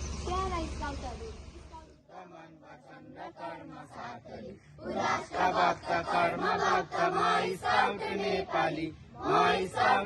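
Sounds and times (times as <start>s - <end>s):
young voices chanting: 2.0s - 10.0s.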